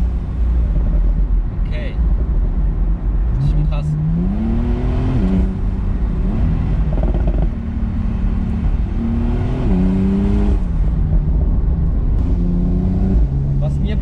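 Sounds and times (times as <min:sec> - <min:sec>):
steady low rumble: 0:00.0 - 0:14.0
car engine revving: 0:03.2 - 0:14.0.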